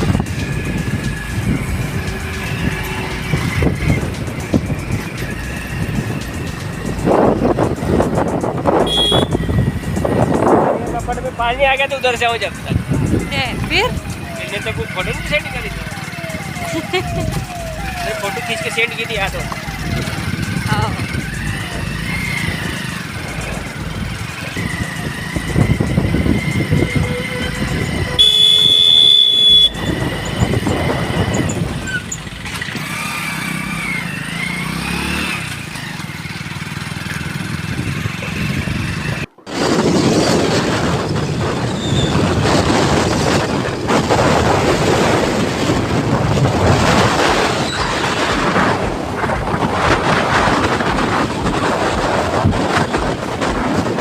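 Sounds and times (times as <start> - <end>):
wind rushing on microphone: 0.0 - 15.9, 19.2 - 33.1, 37.0 - 54.0
road vehicle running: 0.0 - 54.0
vehicle horn honking: 8.8 - 9.7, 26.7 - 30.1.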